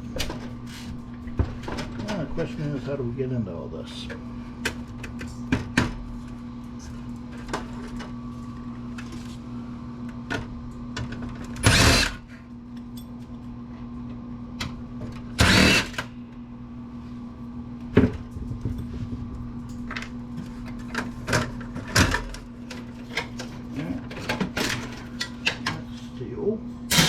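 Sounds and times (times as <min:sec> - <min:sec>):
power driver backing out screws: 0:15.4 - 0:16.1.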